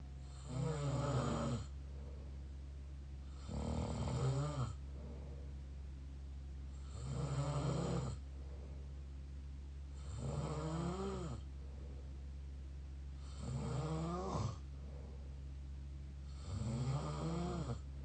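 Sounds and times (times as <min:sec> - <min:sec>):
person snoring: 0:00.3 - 0:01.7, 0:03.2 - 0:05.3, 0:06.8 - 0:08.2, 0:10.0 - 0:11.4, 0:13.2 - 0:14.6, 0:16.3 - 0:17.8.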